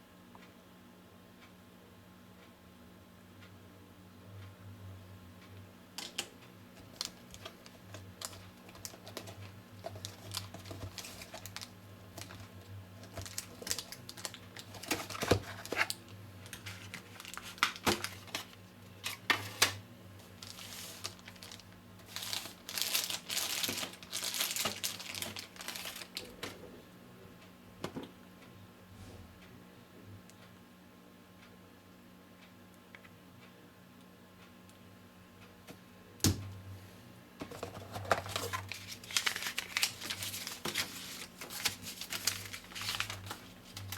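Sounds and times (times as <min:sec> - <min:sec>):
packaging clicks and taps: 0:06.0 - 0:18.5
plastic wrapping crinkling: 0:06.8 - 0:26.5, 0:37.5 - 0:43.9.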